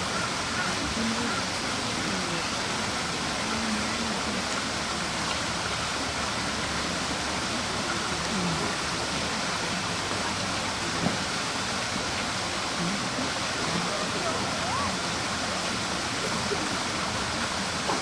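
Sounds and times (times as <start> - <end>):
faint distant voices: 0.0 - 18.0.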